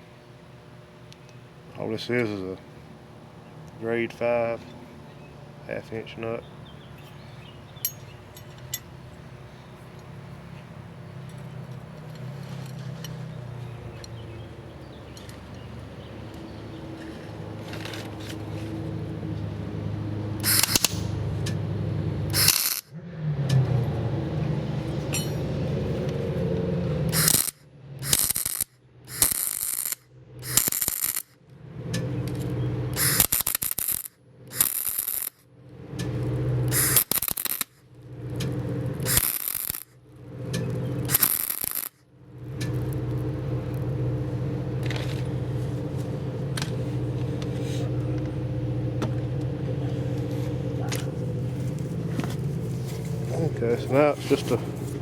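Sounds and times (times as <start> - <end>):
low steady hum: 0.0 - 33.0
arc welding crackling: 20.4 - 21.1, 22.3 - 22.9, 27.1 - 31.4, 32.9 - 35.4, 36.7 - 40.0, 41.1 - 42.0.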